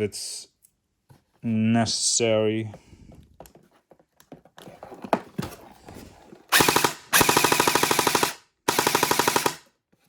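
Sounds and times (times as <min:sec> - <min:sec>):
airsoft gun firing bursts: 0:06.5 - 0:09.7.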